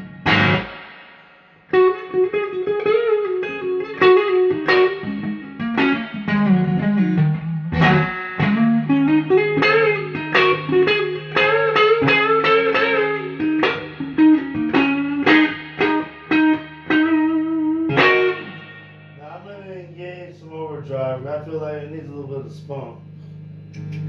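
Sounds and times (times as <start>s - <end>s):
clean electric guitar: 0.0s - 24.0s.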